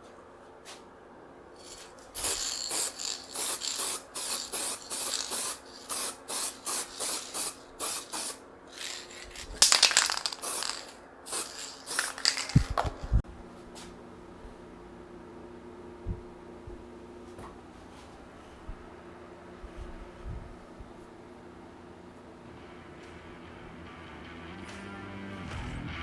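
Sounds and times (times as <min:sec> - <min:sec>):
spray can hissing: 0:01.6 - 0:13.2.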